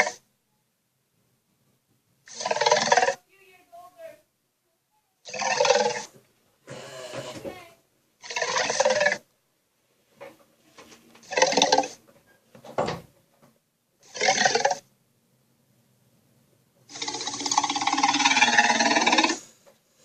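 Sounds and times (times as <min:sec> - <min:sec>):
cartoon monster growls: 0:16.9 - 0:19.4.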